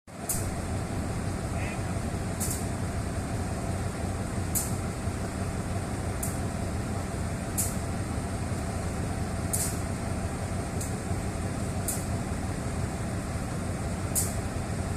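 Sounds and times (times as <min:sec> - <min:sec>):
locomotive engine idling: 0:00.2 - 0:14.9
sharp air hisses: 0:09.5 - 0:09.9.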